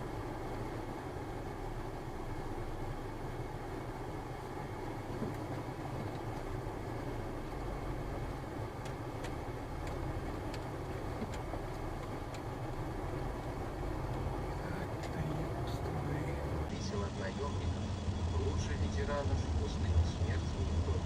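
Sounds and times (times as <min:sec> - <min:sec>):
car engine and road noise: 0:00.0 - 0:21.0
faint clicks: 0:14.9 - 0:15.2.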